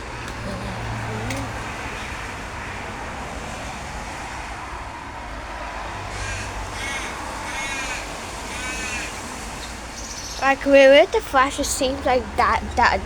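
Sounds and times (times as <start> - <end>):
crow cawing: 6.1 - 9.2.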